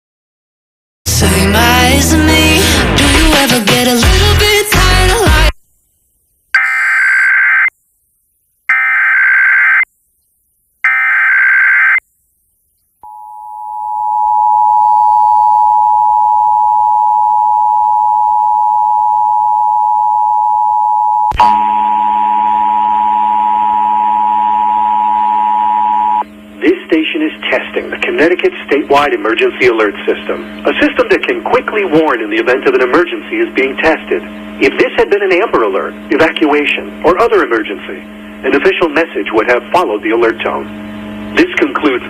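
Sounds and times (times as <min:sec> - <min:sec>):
data tone bursts: 0:06.6 - 0:07.7, 0:10.8 - 0:12.0, 0:13.1 - 0:26.3
two-tone attention signal: 0:06.6 - 0:07.7
buzzing hum: 0:06.6 - 0:42.0
radio music: 0:23.8 - 0:42.0.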